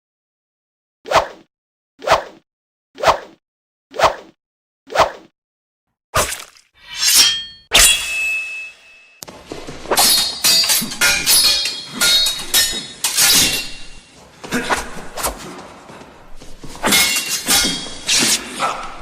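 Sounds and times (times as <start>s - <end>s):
swords clashing: 6.8s - 9.2s, 9.8s - 15.4s, 16.5s - 19.0s.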